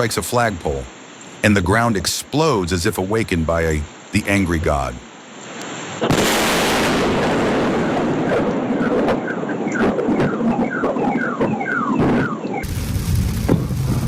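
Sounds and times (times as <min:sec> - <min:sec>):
lightning crack: 0:06.0 - 0:14.0
thunder rumbling: 0:06.1 - 0:14.0
car alarm chirps: 0:08.3 - 0:12.6.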